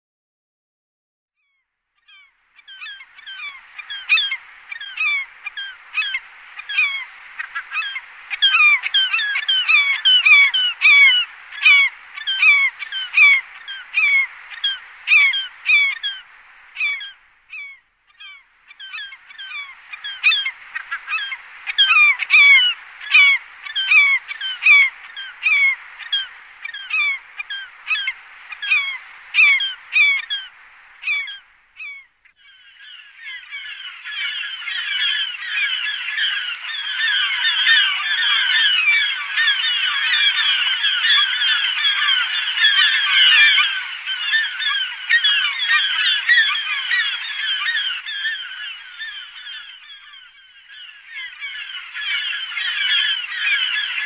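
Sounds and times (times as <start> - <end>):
gulls calling: 2.0 - 54.0.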